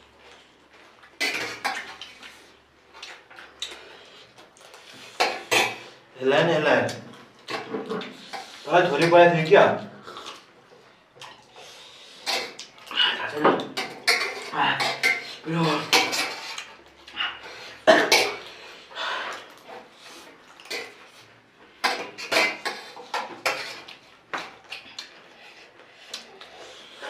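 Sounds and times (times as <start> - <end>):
spoons clinking on plates: 13.7 - 16.5.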